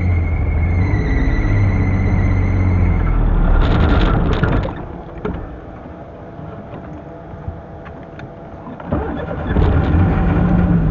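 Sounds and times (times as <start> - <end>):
car engine running and stalling: 1.6 - 5.5.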